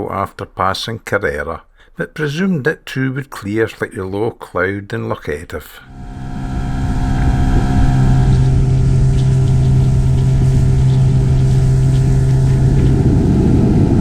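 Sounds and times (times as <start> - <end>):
water noise: 5.8 - 14.0
outboard motor drone: 5.9 - 14.0
wind: 5.9 - 14.0.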